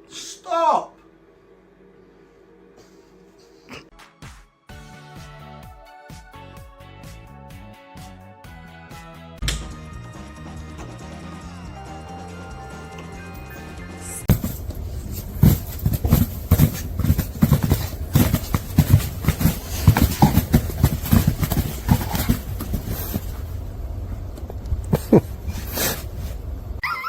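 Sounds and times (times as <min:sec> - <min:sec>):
irregular thumps and knocks: 0:14.3 - 0:23.5.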